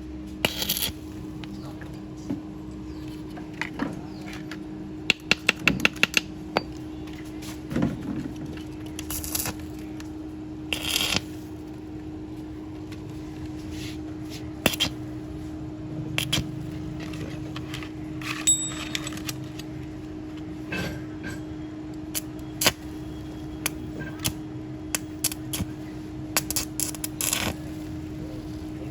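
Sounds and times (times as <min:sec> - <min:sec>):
steady hum: 0:00.0 - 0:28.9.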